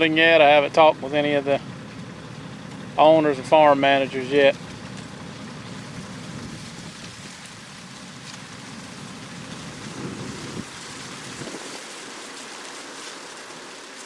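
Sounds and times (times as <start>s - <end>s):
low rumble: 8.6s - 11.7s
combine harvester rushing hiss: 8.8s - 12.2s.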